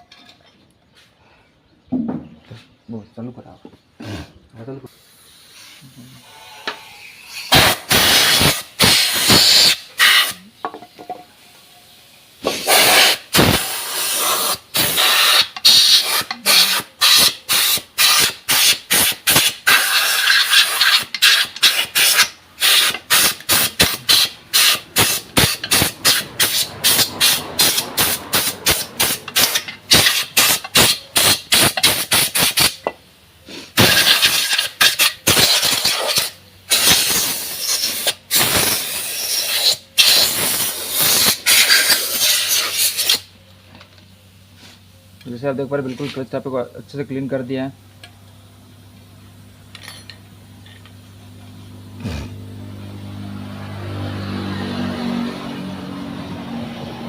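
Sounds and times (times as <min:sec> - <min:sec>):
air blow gun hissing in bursts: 0:04.9 - 0:10.5, 0:11.9 - 0:43.3.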